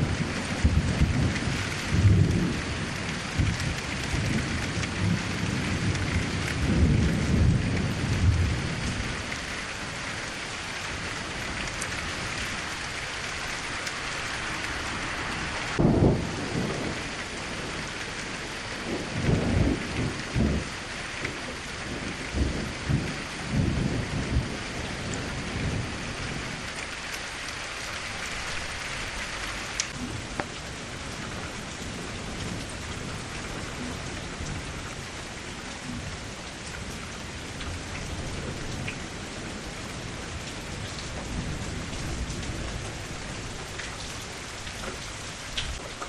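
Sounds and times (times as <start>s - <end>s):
rolling thunder: 0.0s - 9.4s, 15.7s - 26.8s
steady rain hissing: 0.0s - 46.0s.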